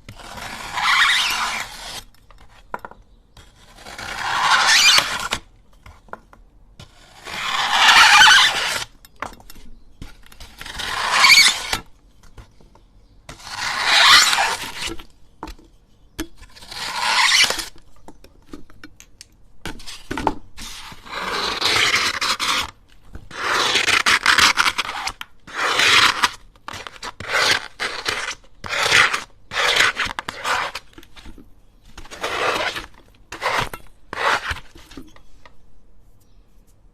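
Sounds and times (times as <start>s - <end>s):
blade scraping sand: 0.1s - 2.6s, 3.4s - 5.5s, 6.8s - 8.9s, 10.0s - 11.9s, 13.3s - 15.1s, 16.4s - 17.8s, 20.6s - 35.2s.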